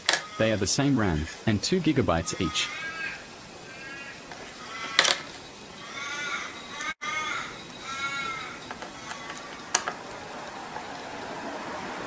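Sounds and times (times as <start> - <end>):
bird harsh crow-like calls: 0.0 - 0.6, 2.3 - 10.7.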